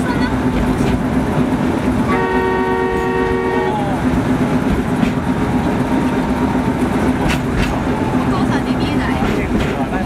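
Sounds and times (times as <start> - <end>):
train wheels clattering on track: 0.0 - 10.0
train horn: 2.1 - 4.0.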